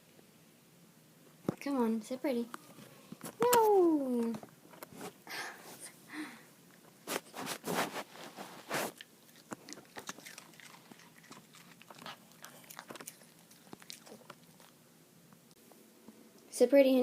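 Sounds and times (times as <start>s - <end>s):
dog chewing and crunching: 7.4s - 14.8s.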